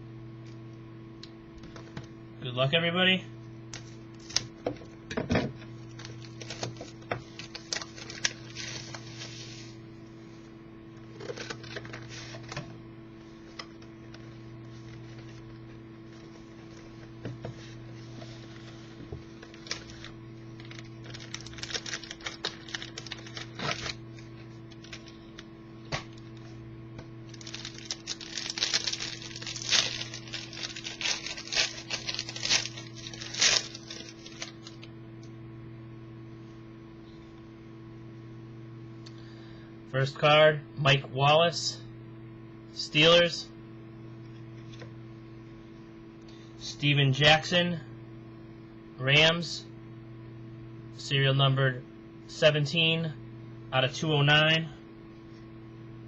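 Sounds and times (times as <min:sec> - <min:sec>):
electrical hum: 0:00.0 - 0:56.0
card pack crinkling and rustling: 0:05.8 - 0:09.6, 0:11.1 - 0:12.6, 0:18.2 - 0:25.5, 0:27.3 - 0:34.9.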